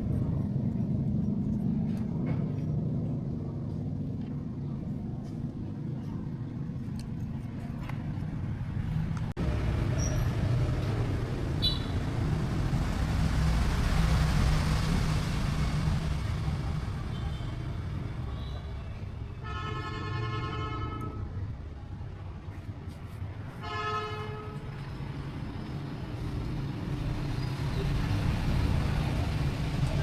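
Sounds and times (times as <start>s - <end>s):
engine low rumble: 0.0s - 23.6s, 24.2s - 30.0s
vehicle horn toot: 11.6s - 12.0s.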